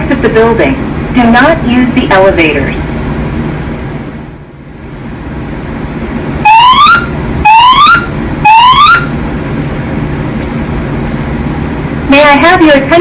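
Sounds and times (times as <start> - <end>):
fire alarm whoop tones: 6.4 - 9.2.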